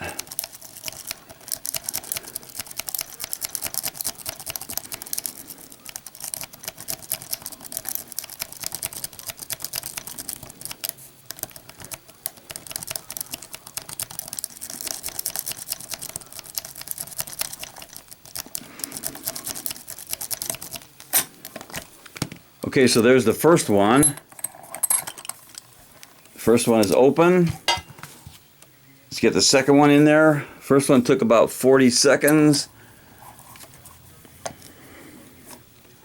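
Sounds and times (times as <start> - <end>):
metal rake clicking in padlock: 0.0 - 21.6.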